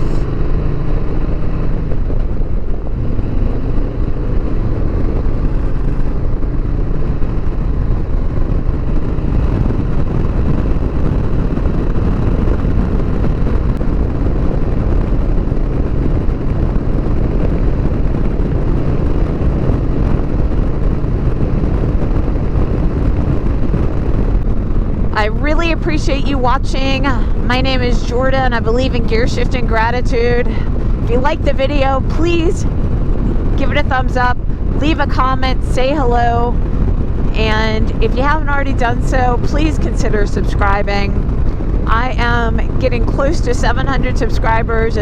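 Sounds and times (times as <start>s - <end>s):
motorcycle engine cruising: 0.0s - 45.0s
road noise: 0.0s - 45.0s.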